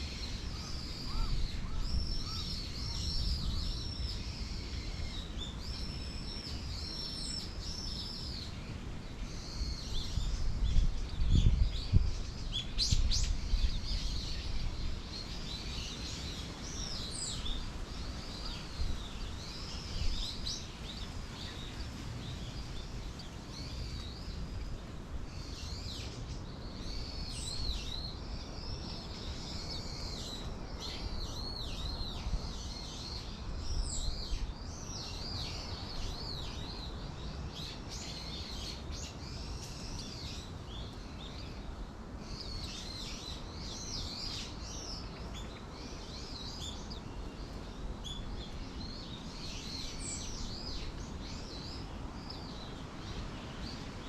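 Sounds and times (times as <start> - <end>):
songbirds chirping: 0.0 - 54.0.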